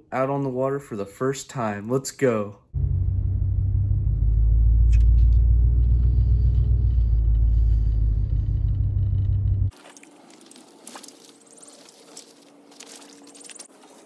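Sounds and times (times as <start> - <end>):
motor vehicle rumbling: 2.7 - 9.8.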